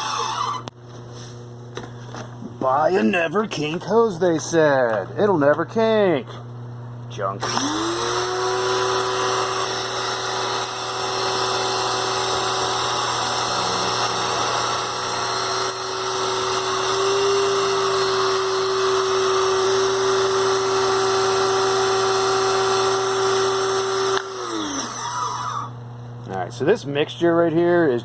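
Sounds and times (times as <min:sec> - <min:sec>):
pressure washer motor whine: 0:00.0 - 0:00.7, 0:07.4 - 0:25.8.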